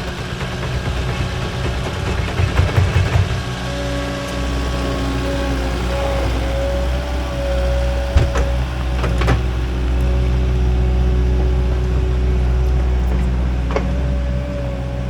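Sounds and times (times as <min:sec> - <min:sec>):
diesel engine running: 0:00.0 - 0:15.0.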